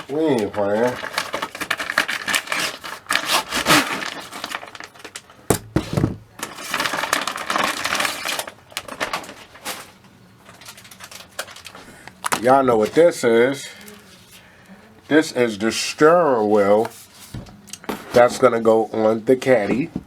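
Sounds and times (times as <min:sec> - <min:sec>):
package being torn open: 0:00.0 - 0:05.7, 0:06.4 - 0:09.8.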